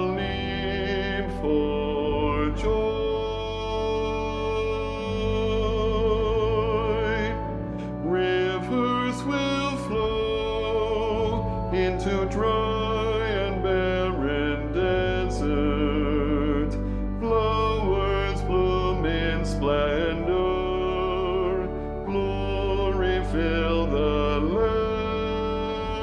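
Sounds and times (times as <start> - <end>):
sustained low accompaniment: 0.0 - 26.0.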